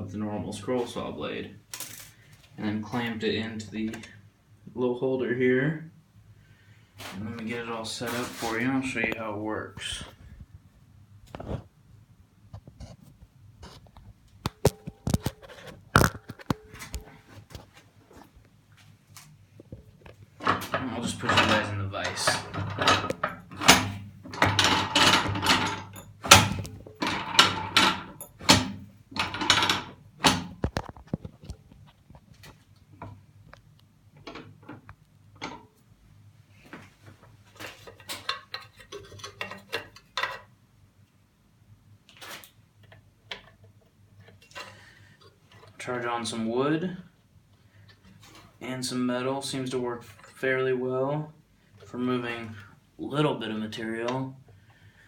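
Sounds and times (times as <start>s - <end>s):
tools and metal parts knocking: 20.4s - 30.9s, 37.7s - 40.5s.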